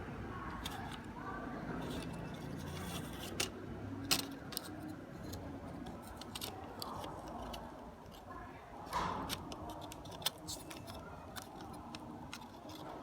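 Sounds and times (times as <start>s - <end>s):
plastic parts clicking and tapping: 0.4s - 1.2s, 1.8s - 13.0s.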